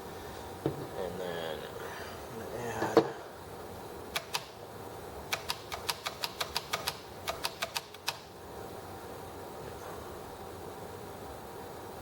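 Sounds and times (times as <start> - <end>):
sewing machine parts clicking: 5.3 - 8.2.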